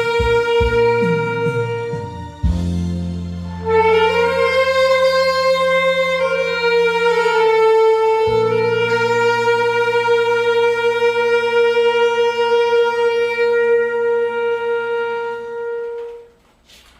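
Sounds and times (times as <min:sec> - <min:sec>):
backing track: 0:00.0 - 0:16.4
saxophone sustained notes: 0:00.0 - 0:16.5.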